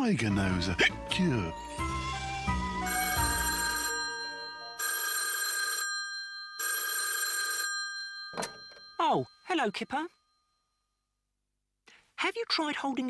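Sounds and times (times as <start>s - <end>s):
electric doorbell ringing: 2.9s - 10.1s.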